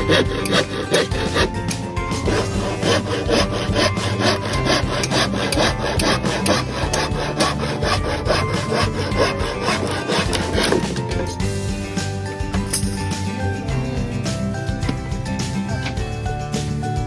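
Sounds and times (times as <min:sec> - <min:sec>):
handsaw cutting through wood: 0:00.0 - 0:11.4.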